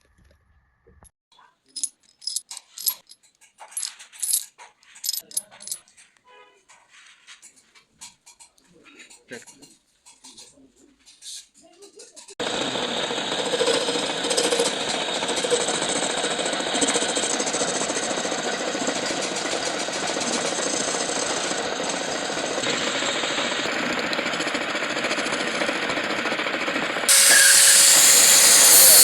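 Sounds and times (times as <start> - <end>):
metal lathe cutting steel: 12.4 - 29.0.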